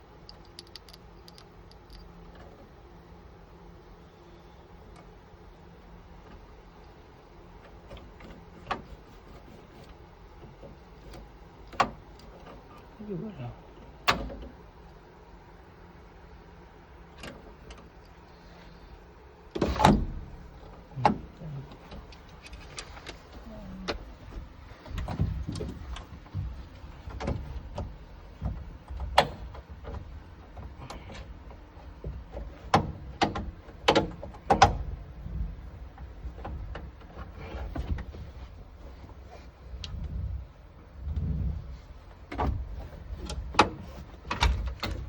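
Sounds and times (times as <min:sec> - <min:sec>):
tools clicking and rattling on car door: 0:32.0 - 0:35.0.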